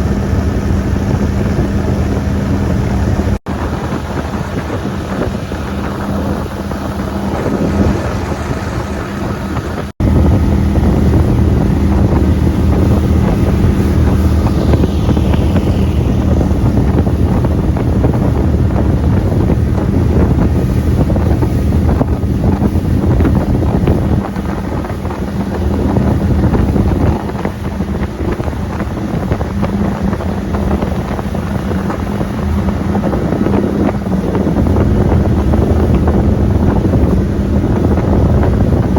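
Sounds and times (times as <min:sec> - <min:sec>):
boat motor running: 0:00.0 - 0:38.9
wind buffeting microphone: 0:00.0 - 0:38.9.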